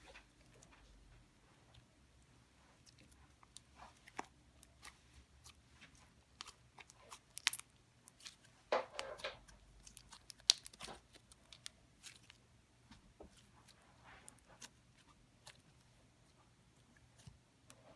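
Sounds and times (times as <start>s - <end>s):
slime squished by hand: 6.3s - 12.4s.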